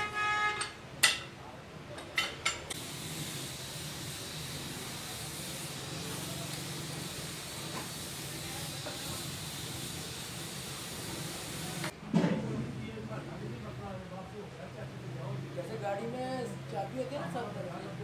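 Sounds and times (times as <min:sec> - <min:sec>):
compressed air hissing from air tool: 0:02.8 - 0:11.9.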